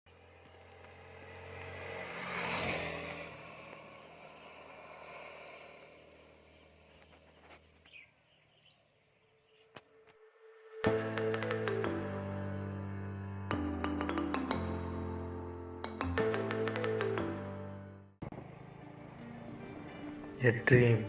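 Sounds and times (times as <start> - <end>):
vehicle engine passing: 0.1 - 8.0, 18.2 - 21.0.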